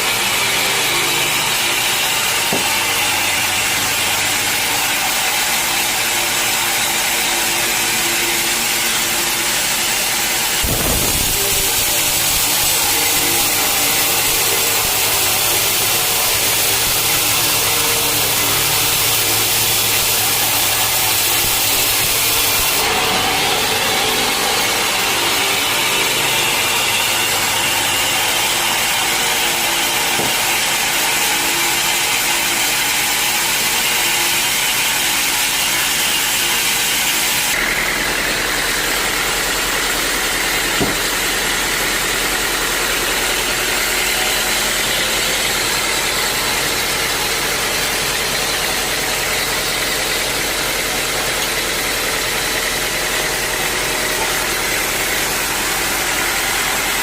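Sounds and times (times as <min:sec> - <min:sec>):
sawmill engine and saw running: 0:00.0 - 0:57.0
short knock: 0:40.8 - 0:41.1.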